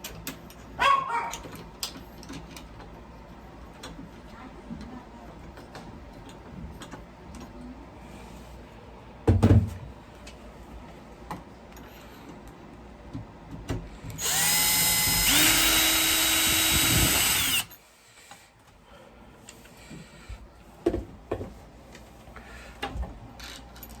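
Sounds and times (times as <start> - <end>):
power drill running: 14.2 - 17.8.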